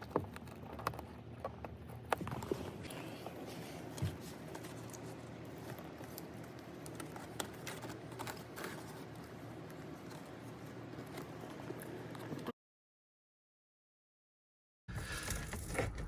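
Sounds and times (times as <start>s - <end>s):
hands handling plastic trim: 0.0s - 12.4s.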